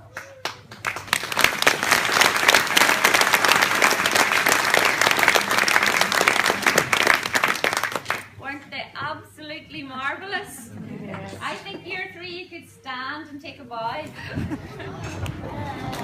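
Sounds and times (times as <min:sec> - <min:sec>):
audience applauding: 0:00.0 - 0:08.4.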